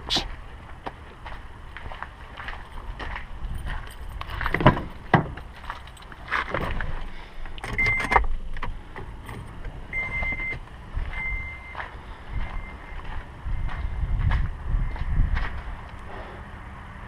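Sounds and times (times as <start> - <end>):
keys jangling: 3.6 - 4.7, 5.4 - 6.8
car warning chime beeps: 7.7 - 8.2, 9.9 - 12.9.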